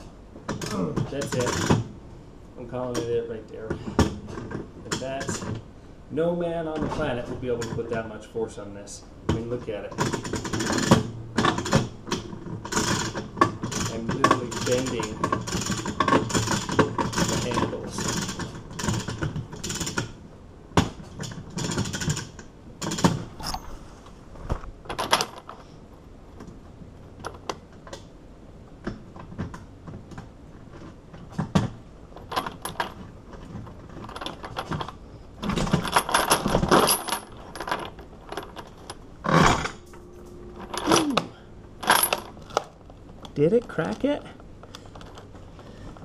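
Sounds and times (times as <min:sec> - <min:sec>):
rattling clatter: 0:30.7 - 0:44.0
metal padlock and bolt cutters clinking: 0:32.2 - 0:33.0, 0:33.8 - 0:44.1.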